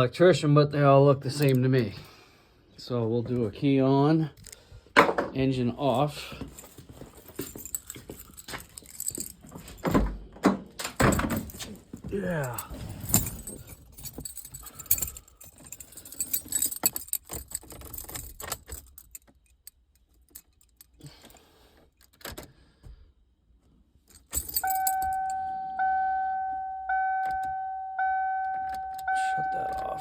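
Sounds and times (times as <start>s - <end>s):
car keys jangling: 1.3s - 2.1s, 4.3s - 4.7s, 5.9s - 22.5s, 24.0s - 30.0s
dashboard warning chime dinging: 24.4s - 30.0s.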